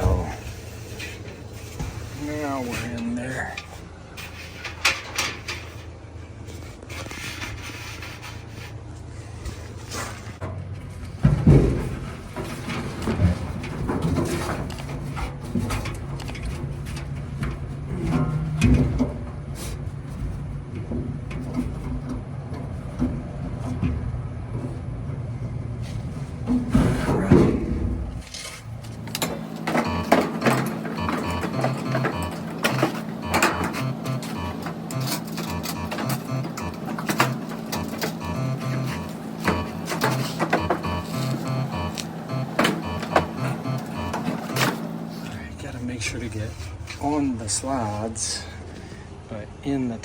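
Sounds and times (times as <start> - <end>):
steady low hum: 0.0 - 49.7
background music with steady beat: 29.8 - 44.8.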